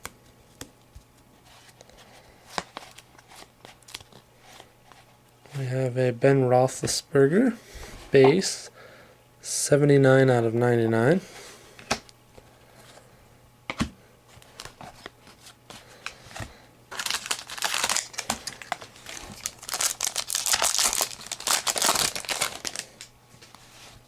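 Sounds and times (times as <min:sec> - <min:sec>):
wrapper tearing and crinkling: 0:16.9 - 0:23.1.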